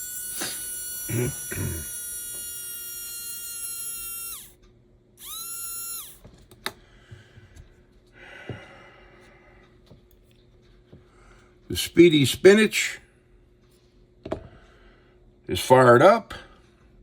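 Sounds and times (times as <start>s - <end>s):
slot car motor whine: 0.0s - 4.6s, 5.2s - 6.2s.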